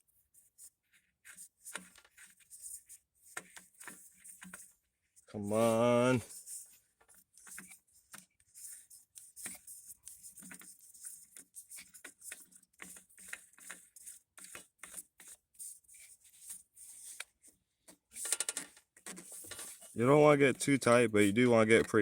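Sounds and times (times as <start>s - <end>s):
oil filter scraping on threads: 5.5s - 22.0s.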